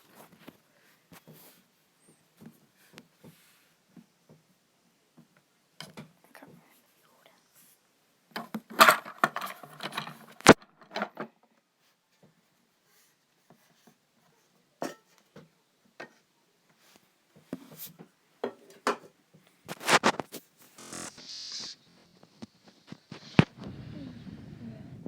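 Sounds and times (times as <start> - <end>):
small objects handled: 18.7 - 20.8.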